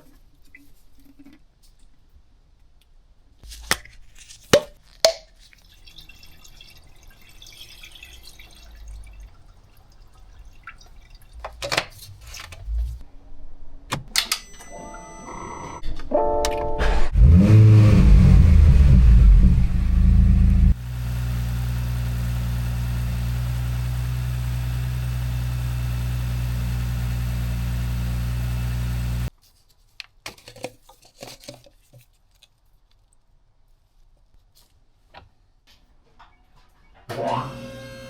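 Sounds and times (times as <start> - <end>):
car engine starting and idling: 16.8 - 29.3.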